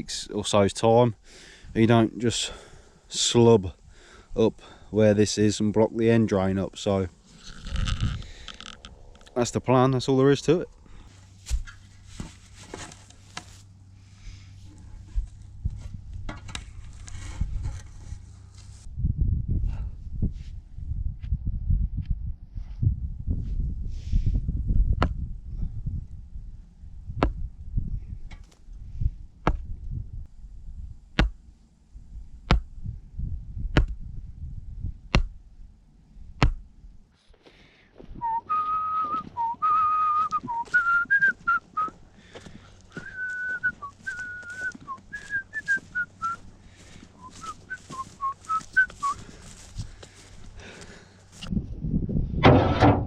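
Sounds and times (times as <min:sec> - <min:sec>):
low rumble: 0:13.7 - 0:37.1
person whistling a tune: 0:38.2 - 0:42.0, 0:43.0 - 0:46.4, 0:47.2 - 0:49.2.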